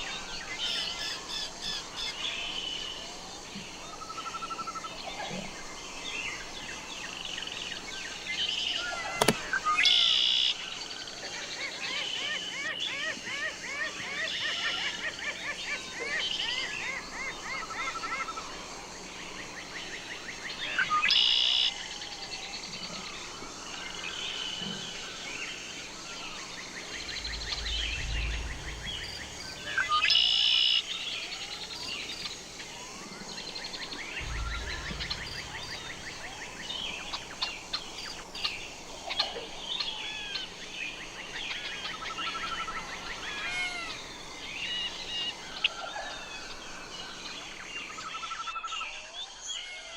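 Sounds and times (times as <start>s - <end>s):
loud bird calls: 0.0s - 48.8s
birds chirping and trilling: 0.0s - 49.9s
blackbird singing: 19.8s - 48.7s
low rumbles: 26.0s - 33.0s, 33.9s - 39.0s.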